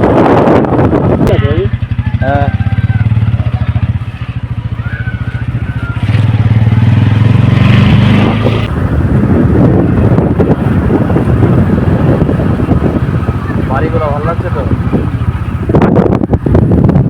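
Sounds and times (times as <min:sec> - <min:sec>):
motorcycle engine rumble: 0:00.0 - 0:17.0
wind buffeting microphone: 0:00.0 - 0:17.0.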